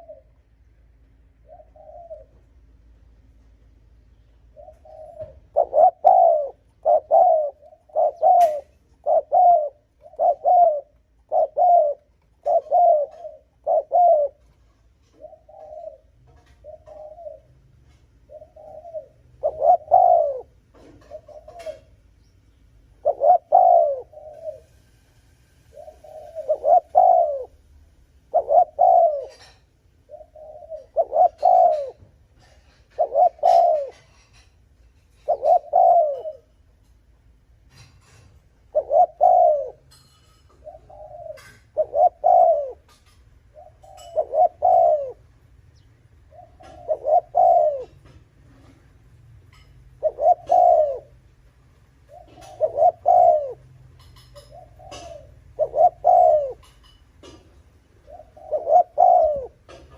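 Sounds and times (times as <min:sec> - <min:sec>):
dove cooing: 0:00.0 - 0:22.1, 0:22.8 - 0:25.0, 0:25.6 - 0:36.8, 0:37.5 - 0:59.9.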